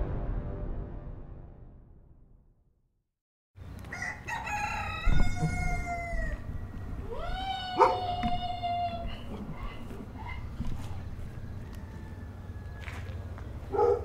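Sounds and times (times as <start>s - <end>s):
low barnyard background noise: 3.6s - 14.0s
rooster crowing: 3.8s - 10.4s, 11.2s - 13.9s.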